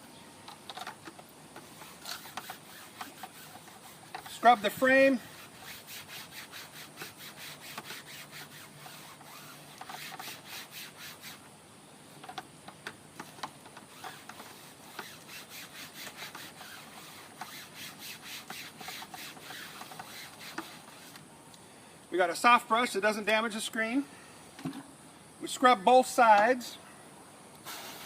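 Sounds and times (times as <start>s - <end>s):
brush scrubbing wet screen: 1.1s - 11.5s, 13.2s - 21.2s.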